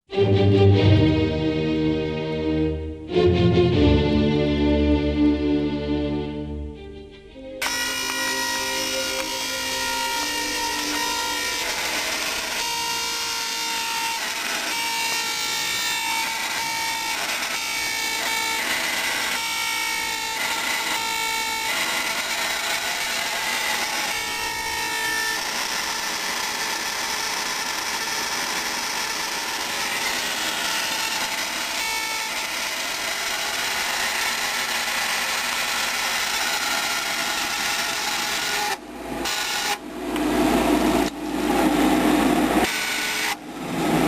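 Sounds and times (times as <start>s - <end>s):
squealing tones: 7.6s - 28.3s.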